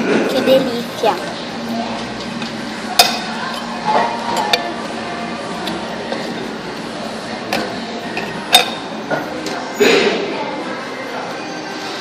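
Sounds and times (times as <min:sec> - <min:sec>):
restaurant background noise: 0:00.0 - 0:12.0
tableware clinking: 0:02.4 - 0:04.8, 0:07.4 - 0:10.0.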